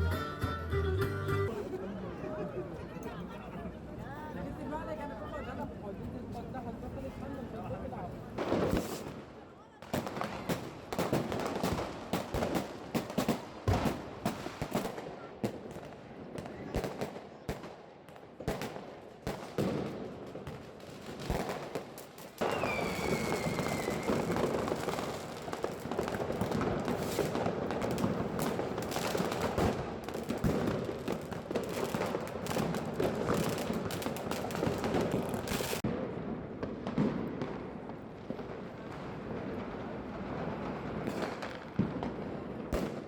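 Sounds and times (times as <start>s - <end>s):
fireworks bangs and crackles: 6.0s - 43.0s
falling firework whistle: 22.4s - 24.7s.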